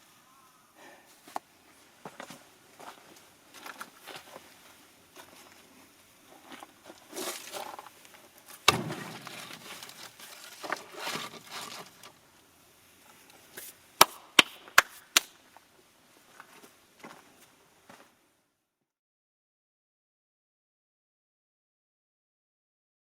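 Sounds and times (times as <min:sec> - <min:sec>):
handling noises: 0:06.3 - 0:12.3
axe striking wood: 0:08.7 - 0:11.4.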